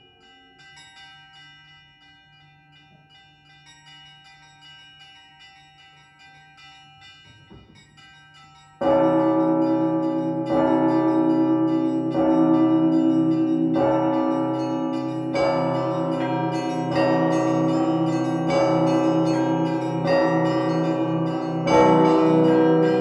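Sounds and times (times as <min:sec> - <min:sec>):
small church bells ringing: 0:00.0 - 0:23.0
deep bell strike: 0:08.8 - 0:23.0.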